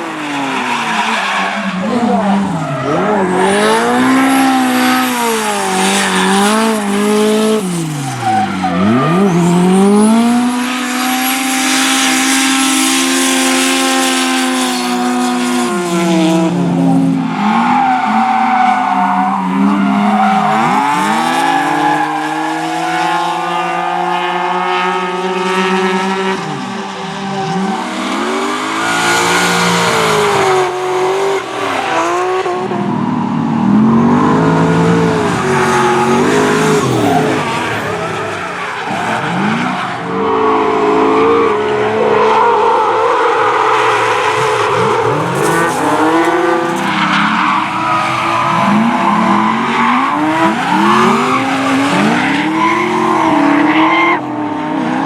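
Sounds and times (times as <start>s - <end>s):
car engine revving: 0.0s - 55.0s
tyres squealing while sliding: 44.2s - 53.0s.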